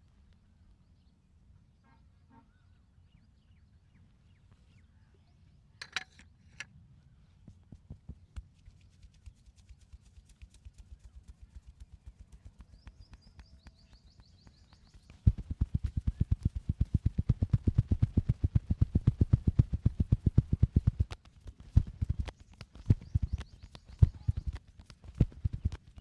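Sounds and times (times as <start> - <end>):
hands patting on skin: 14.9 - 26.0.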